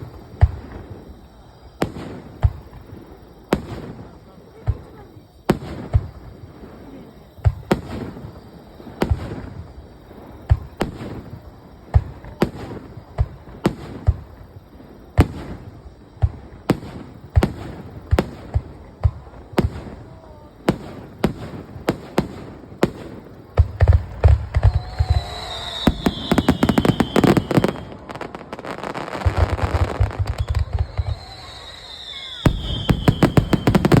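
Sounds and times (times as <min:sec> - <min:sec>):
fireworks bursting: 0:00.0 - 0:34.0
falling whistling tone: 0:24.6 - 0:34.0.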